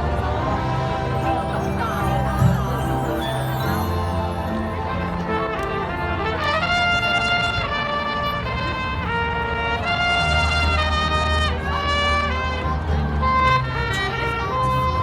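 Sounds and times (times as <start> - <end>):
trumpets playing held notes: 0.0 - 14.7.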